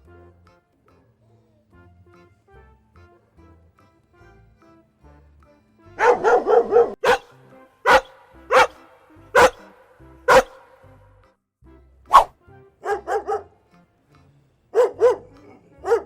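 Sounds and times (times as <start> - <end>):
quiet background music: 0.0 - 16.0
dog barking: 6.0 - 10.8, 12.1 - 13.6, 14.7 - 16.0.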